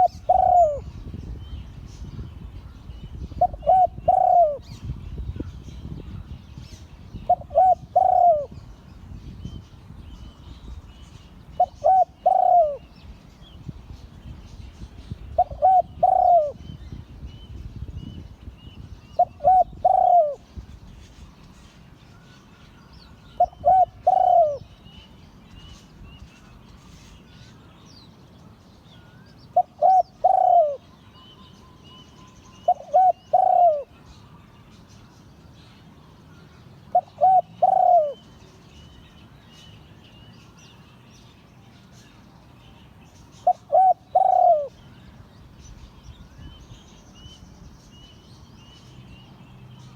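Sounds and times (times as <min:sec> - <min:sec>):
dove cooing: 0:00.0 - 0:00.9, 0:03.4 - 0:04.8, 0:07.2 - 0:08.6, 0:11.6 - 0:12.9, 0:15.3 - 0:16.6, 0:19.2 - 0:20.5, 0:23.3 - 0:24.8, 0:29.5 - 0:30.8, 0:32.6 - 0:34.0, 0:36.9 - 0:38.2, 0:43.4 - 0:44.9
small birds chirping: 0:00.0 - 0:49.9.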